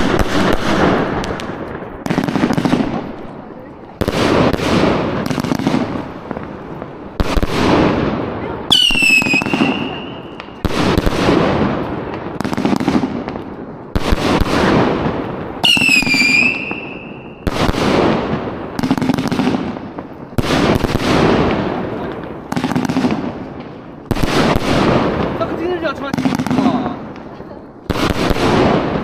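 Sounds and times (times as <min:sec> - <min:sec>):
fireworks bangs with crackle: 0:00.0 - 0:29.0
falling firework whistle: 0:08.7 - 0:10.6, 0:15.6 - 0:17.5.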